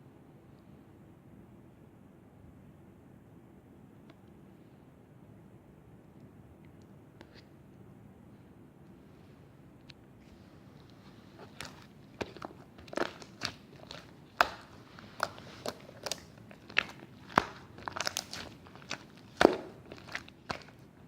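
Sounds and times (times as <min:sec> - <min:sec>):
slime popping and crackling: 0:11.4 - 0:21.0.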